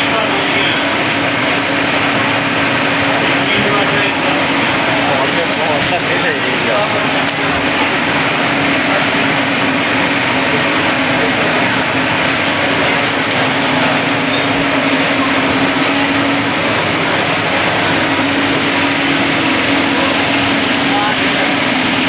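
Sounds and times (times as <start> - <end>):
loud rushing noise: 0.0 - 22.0.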